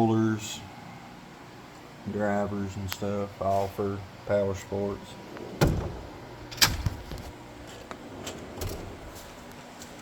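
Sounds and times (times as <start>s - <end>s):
metal toolbox drawer banging shut: 5.6s - 6.9s.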